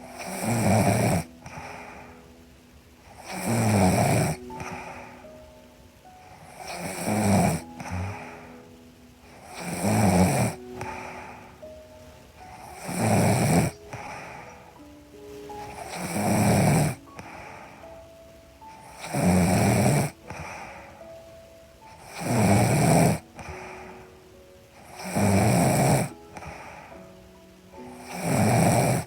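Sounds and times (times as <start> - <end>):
woman snoring: 0.0 - 2.1, 3.1 - 5.3, 6.4 - 8.5, 9.2 - 11.5, 12.4 - 14.4, 15.5 - 17.8, 18.7 - 21.0, 21.9 - 24.0, 24.8 - 26.9, 27.8 - 29.0
soft music with held notes: 0.0 - 29.0.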